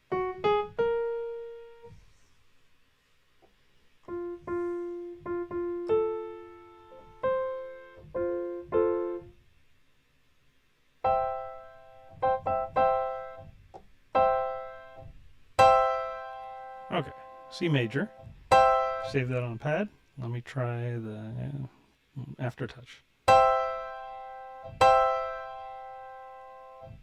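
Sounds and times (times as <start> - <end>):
piano notes and chords: 0.0 - 2.1, 4.0 - 9.4, 11.0 - 19.6, 23.3 - 27.0.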